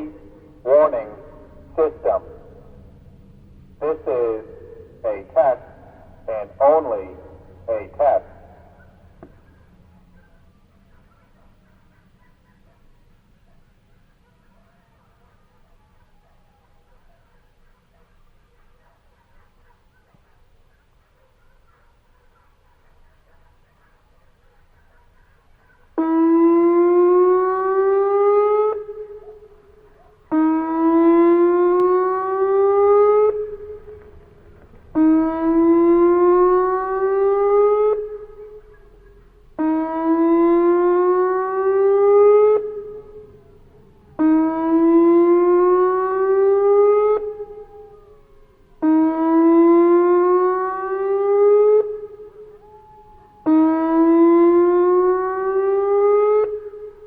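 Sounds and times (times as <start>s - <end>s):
warning siren whoops: 25.9s - 57.0s.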